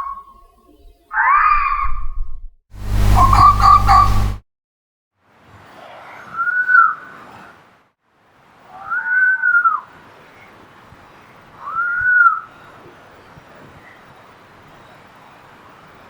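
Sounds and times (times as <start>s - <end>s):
fox screaming calls: 1.1s - 2.0s, 3.2s - 4.2s
low hum: 2.8s - 4.4s.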